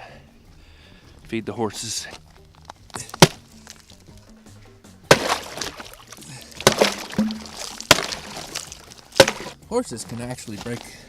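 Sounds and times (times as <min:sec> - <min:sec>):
background music: 0:00.0 - 0:11.0
sharp knocks or crunches: 0:03.0 - 0:03.8, 0:05.1 - 0:06.0, 0:06.6 - 0:09.6.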